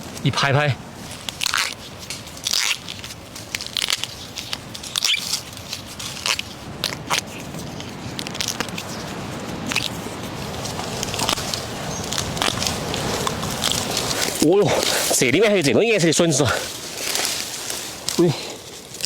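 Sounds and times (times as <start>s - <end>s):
bamboo shoots snapping: 1.1s - 9.0s, 10.6s - 15.5s, 16.6s - 19.0s.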